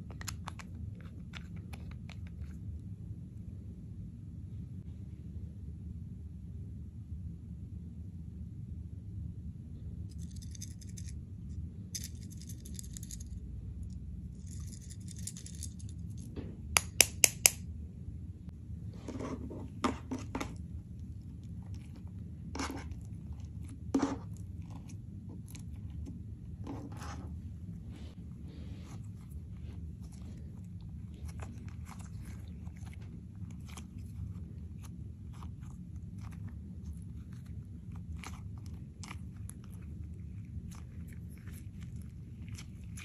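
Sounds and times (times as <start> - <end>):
scratchy rustles: 18.9 - 43.0.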